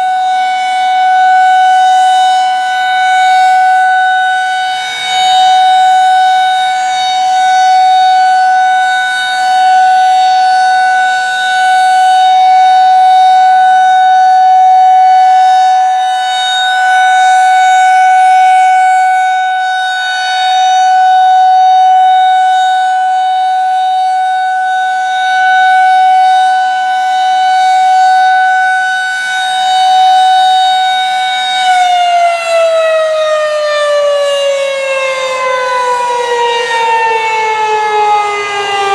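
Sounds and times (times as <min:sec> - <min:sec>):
rotating warning siren alert tone: 0:00.0 - 0:38.9.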